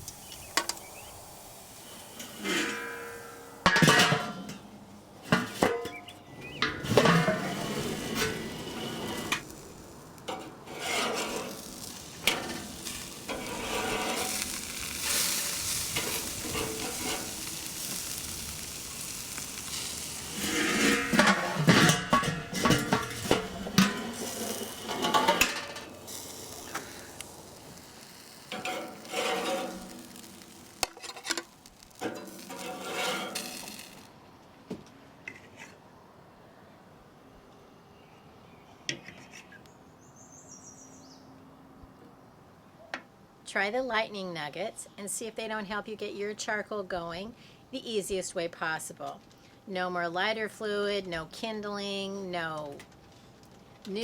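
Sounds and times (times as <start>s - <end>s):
food sizzling on a grill: 0.0s - 4.5s, 5.4s - 34.2s
metal utensils scraping grate: 1.8s - 34.1s.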